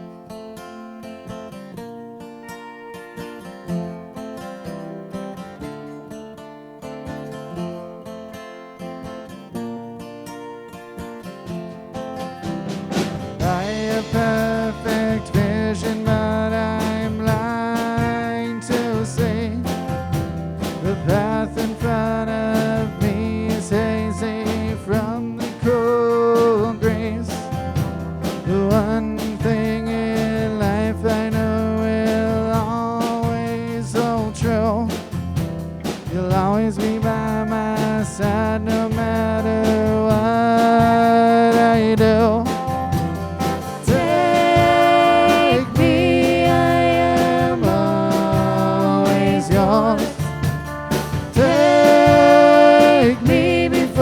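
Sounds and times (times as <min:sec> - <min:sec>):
band playing instrumental: 0:02.4 - 0:04.9, 0:10.3 - 0:54.0
steady drums: 0:12.3 - 0:54.0.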